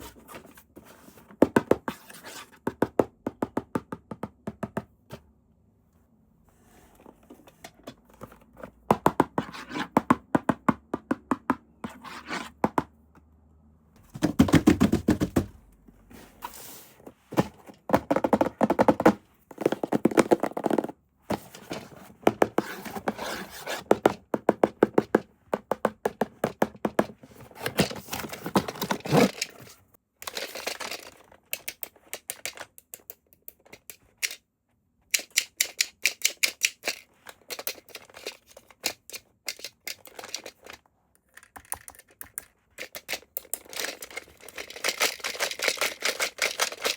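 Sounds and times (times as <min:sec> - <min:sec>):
plastic scraping and rustling: 0:27.2 - 0:31.5, 0:42.8 - 0:46.9.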